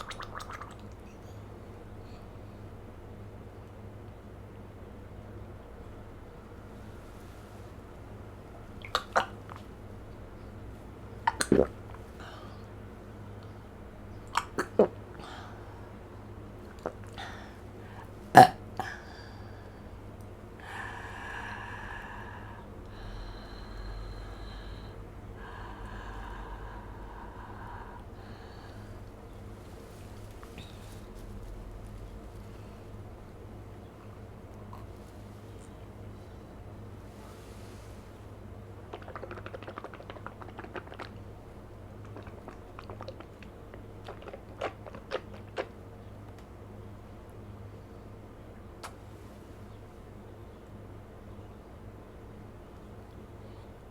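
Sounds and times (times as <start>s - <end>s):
wet lip and tongue smacks: 0.0s - 1.0s, 8.8s - 9.7s, 11.2s - 12.1s, 14.3s - 15.0s, 38.9s - 41.3s, 42.0s - 46.5s, 48.8s - 49.0s
woman breathing through mouth: 18.8s - 33.1s.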